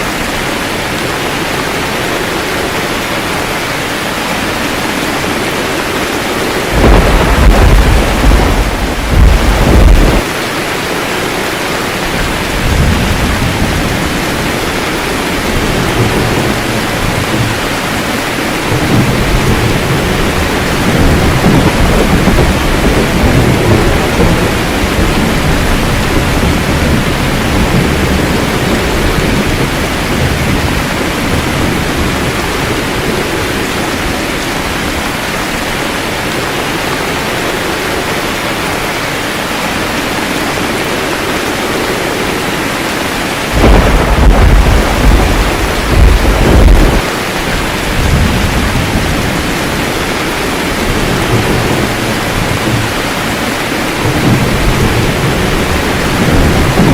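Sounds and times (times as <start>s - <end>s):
heavy rain: 0.0s - 56.9s
thunder rumbling: 0.1s - 38.2s, 38.9s - 56.9s
loud thunderclap: 6.1s - 10.4s, 12.1s - 14.6s, 15.2s - 33.5s, 43.4s - 56.9s.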